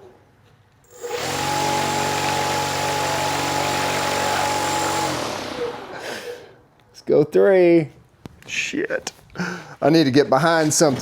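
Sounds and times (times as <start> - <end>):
motor-driven propeller drone: 0.9 - 6.5.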